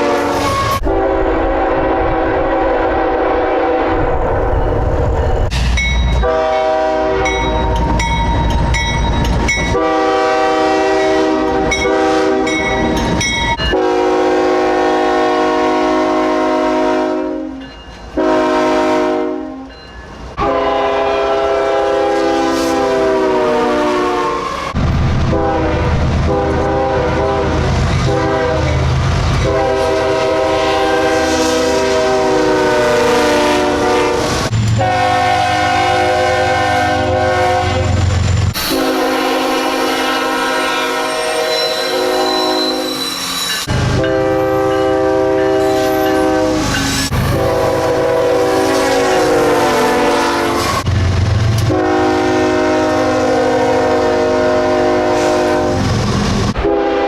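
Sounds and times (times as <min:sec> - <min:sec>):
locomotive air horn blasts: 0:00.0 - 0:04.1, 0:06.2 - 0:07.7, 0:09.6 - 0:13.0, 0:13.6 - 0:17.6, 0:18.2 - 0:19.7, 0:20.4 - 0:28.8, 0:29.4 - 0:50.9, 0:51.6 - 0:56.0, 0:56.6 - 0:57.0
train wheels clicking over rail joints: 0:07.3 - 0:09.8, 0:45.9 - 0:47.5.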